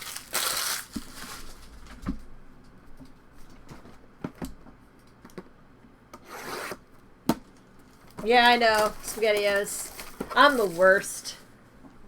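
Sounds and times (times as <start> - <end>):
plastic wrapper crinkling: 0.0 - 2.0, 7.8 - 11.4
trading cards being handled: 8.2 - 11.2.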